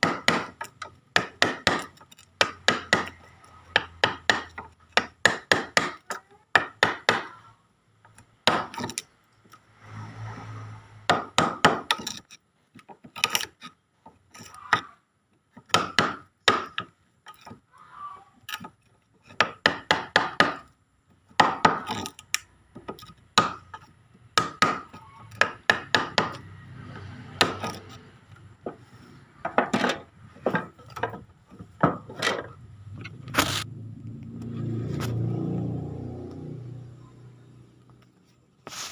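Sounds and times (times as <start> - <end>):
chisel knocking into wood: 0.0 - 7.3, 11.1 - 12.1, 15.6 - 16.9, 19.3 - 20.7, 21.4 - 26.5, 27.4 - 27.8.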